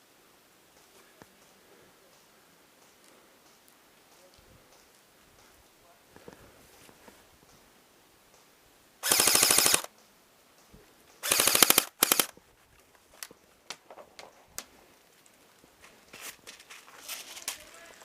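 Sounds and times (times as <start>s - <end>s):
faint clicks: 0.8s - 5.6s
airsoft gun firing bursts: 9.0s - 9.9s, 11.2s - 12.3s.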